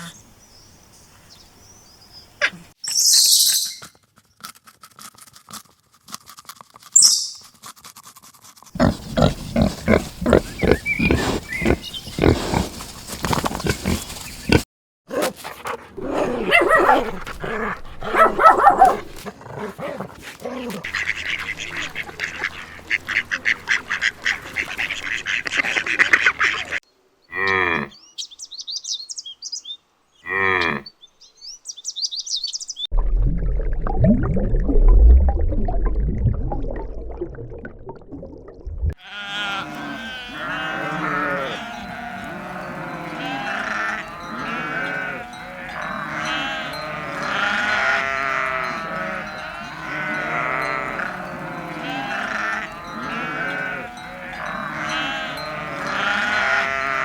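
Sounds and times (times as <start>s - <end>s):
short pitched animal cries: 39.0s - 42.2s.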